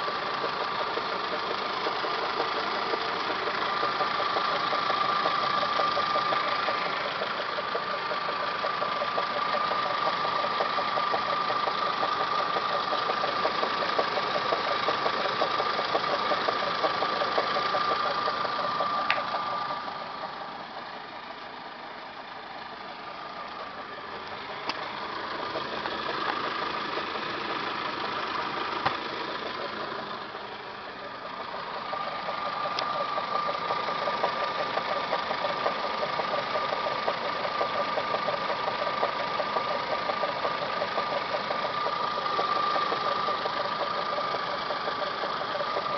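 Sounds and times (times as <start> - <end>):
car engine clattering: 0.0 - 45.9
high-pitched engine whine: 17.2 - 45.9.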